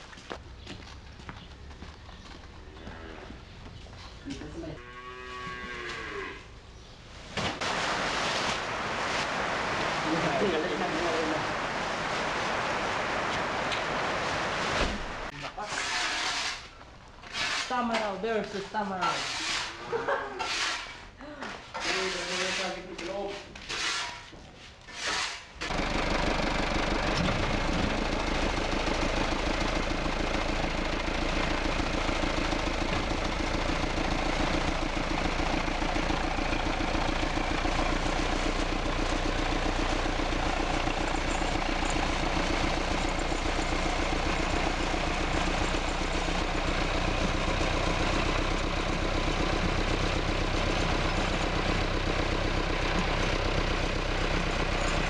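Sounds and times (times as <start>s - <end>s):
engine idling: 25.6s - 55.0s.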